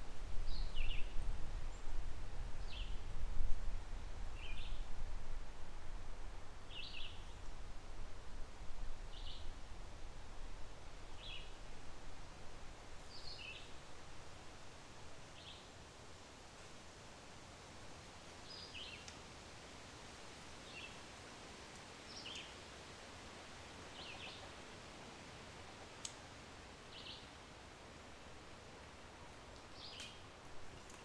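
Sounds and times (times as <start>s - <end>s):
flowing creek: 21.2s - 31.0s.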